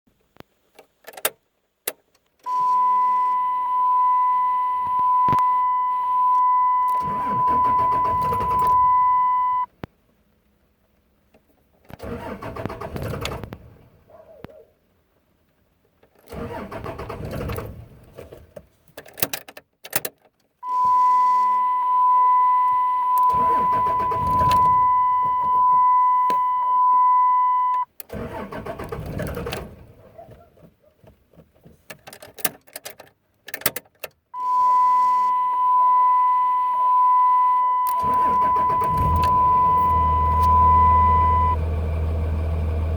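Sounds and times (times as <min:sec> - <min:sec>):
starter motor cranking engine: 0:07.0 - 0:08.8, 0:12.0 - 0:13.5, 0:16.3 - 0:17.8, 0:23.2 - 0:24.9, 0:28.1 - 0:29.8, 0:37.9 - 0:42.9
diesel engine idling: 0:38.0 - 0:42.9.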